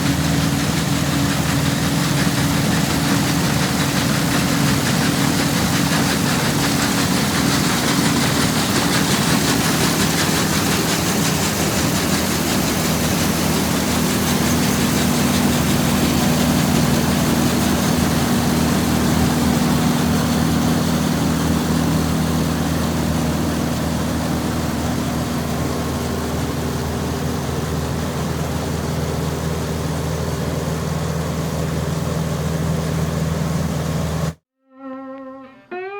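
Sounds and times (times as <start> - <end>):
broad rushing noise: 0.0 - 24.6
combine harvester engine drone: 0.0 - 34.4.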